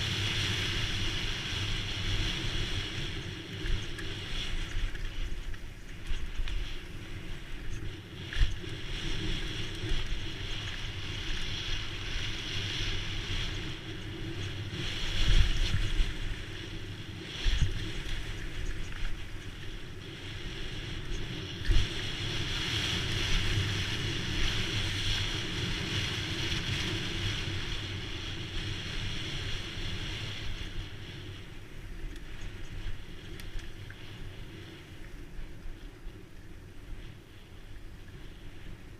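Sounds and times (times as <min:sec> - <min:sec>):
knobby tyres rumbling over dirt: 0:00.0 - 0:38.9
wind rushing over microphone: 0:00.0 - 0:38.9.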